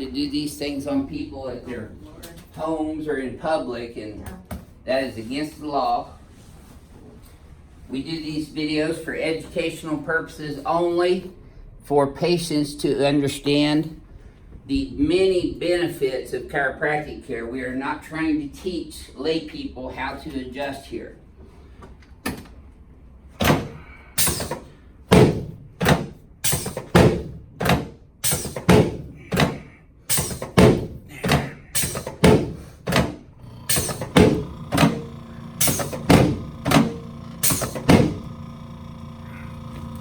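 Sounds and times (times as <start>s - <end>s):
steady hum: 28.2s - 40.0s.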